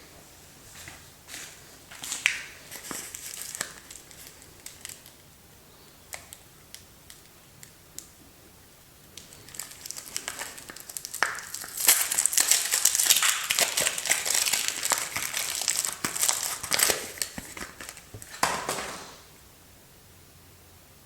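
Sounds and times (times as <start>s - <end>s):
soap wrapper crinkling: 2.0s - 5.3s, 9.1s - 19.0s.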